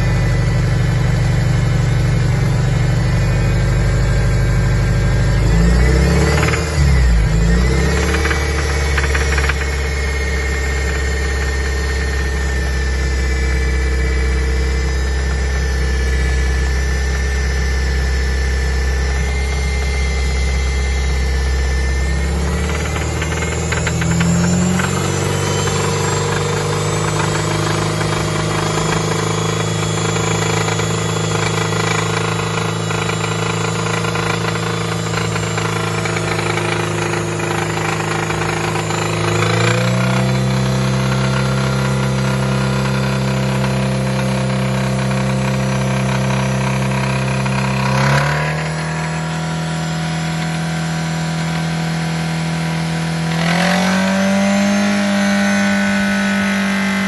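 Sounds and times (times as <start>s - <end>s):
car engine revving: 2.6s - 57.0s
engine knocking: 5.7s - 6.9s, 7.6s - 12.4s, 22.3s - 49.5s.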